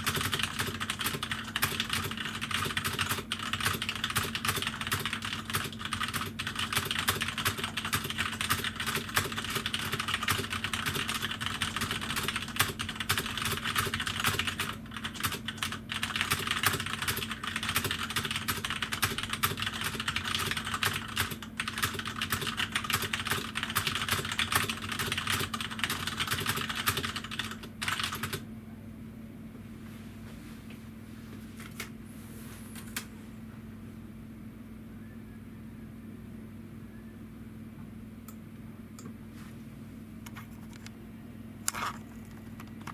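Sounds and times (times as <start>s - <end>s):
mechanical keyboard typing: 0.0s - 28.4s
faint steady hum: 0.0s - 42.9s.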